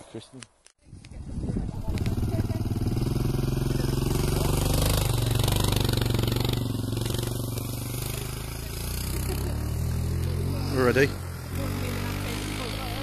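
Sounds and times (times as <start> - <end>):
vehicle engine running: 1.2 - 13.0.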